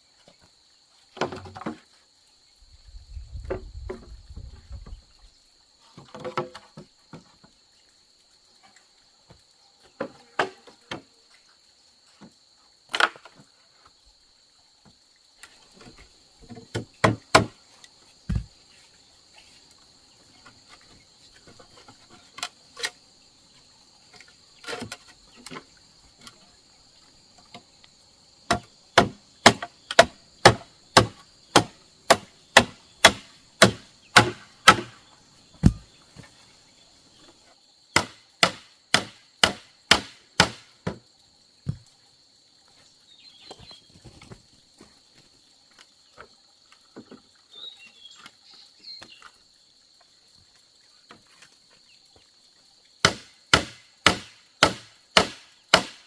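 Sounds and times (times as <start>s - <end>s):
insects buzzing: 0.0s - 56.0s.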